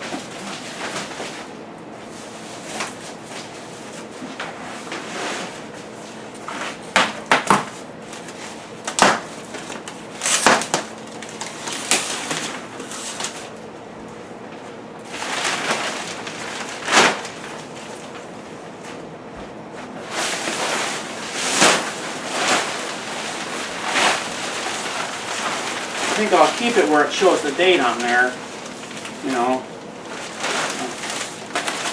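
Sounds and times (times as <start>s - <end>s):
cardboard scraping and rustling: 15.1s - 18.3s, 19.8s - 31.9s.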